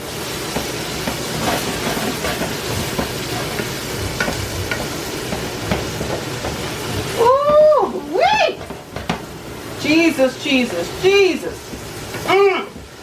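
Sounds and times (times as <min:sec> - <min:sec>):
vegetables sizzling in a frying pan: 0:00.0 - 0:13.0
utensil clicking against pan: 0:00.5 - 0:07.2.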